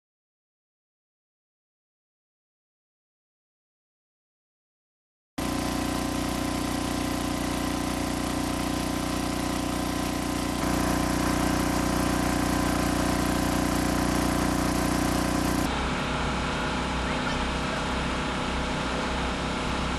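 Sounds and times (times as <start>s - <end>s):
engine humming: 10.4s - 15.9s.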